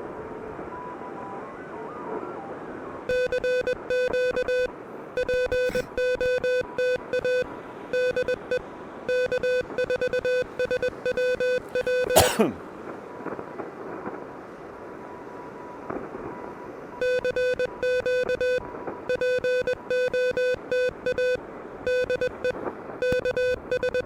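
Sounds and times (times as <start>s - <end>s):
morse code tone: 3.1s - 12.2s, 17.0s - 24.0s.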